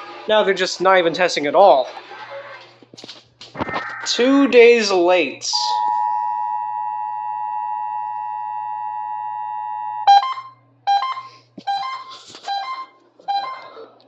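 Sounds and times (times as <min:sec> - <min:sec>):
two-tone alert signal: 0:10.1 - 0:13.8.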